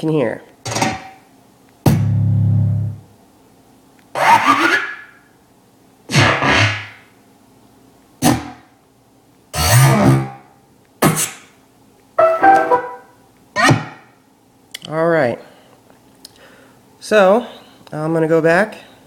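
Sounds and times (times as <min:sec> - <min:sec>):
short music samples on small speaker: 0:12.2 - 0:13.1.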